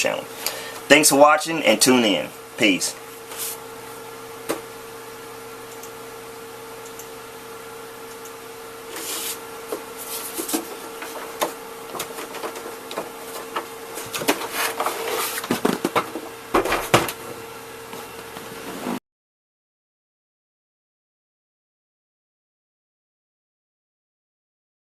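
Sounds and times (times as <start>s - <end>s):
electrical hum: 0.0s - 19.0s
handling noise rustling and knocks: 8.9s - 17.4s.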